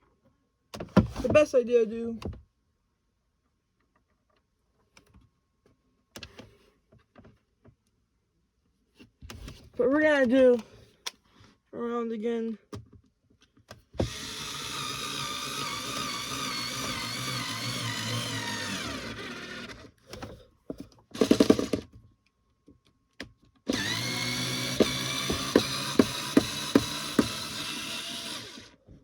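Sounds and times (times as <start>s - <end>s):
electric screwdriver running: 14.0s - 20.0s, 21.2s - 21.9s, 23.7s - 28.8s.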